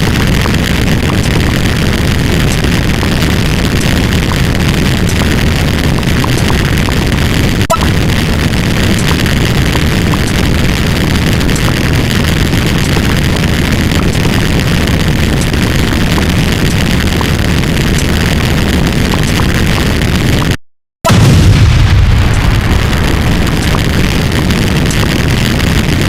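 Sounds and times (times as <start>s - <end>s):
loud low rumbling: 21.1s - 26.0s.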